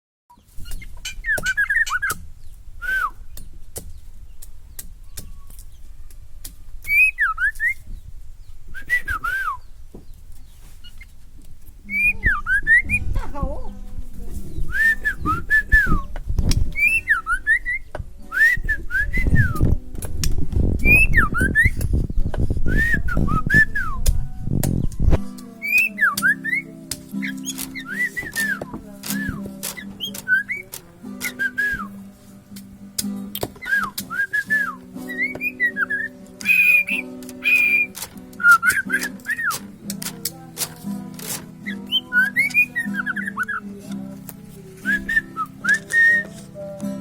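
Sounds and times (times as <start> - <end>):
sharp clicking bird calls: 0.3 - 2.6, 3.3 - 8.6, 24.6 - 31.4, 36.4 - 43.3
bird singing whistled phrases: 0.6 - 2.2, 2.8 - 3.4, 6.8 - 8.0, 8.7 - 9.8, 11.9 - 13.1, 14.6 - 16.1, 16.7 - 19.7, 20.8 - 21.9, 22.7 - 24.1, 25.6 - 32.0, 33.6 - 39.6, 41.6 - 43.7, 44.8 - 46.4.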